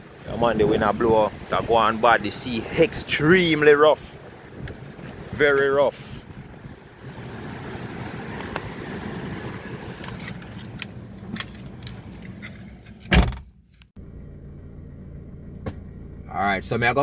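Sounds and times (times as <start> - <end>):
rough surf: 0.0 - 11.0
wind buffeting microphone: 0.0 - 11.1
car door shutting: 9.7 - 13.6, 15.5 - 16.2
car engine idling: 14.0 - 17.0.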